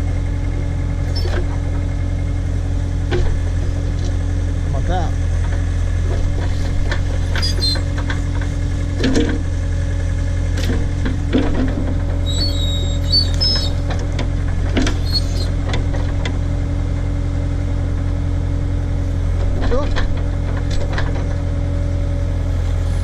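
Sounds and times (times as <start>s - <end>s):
backhoe engine running: 0.0s - 23.0s
high squeals: 7.4s - 7.9s, 12.2s - 13.8s, 15.0s - 15.5s.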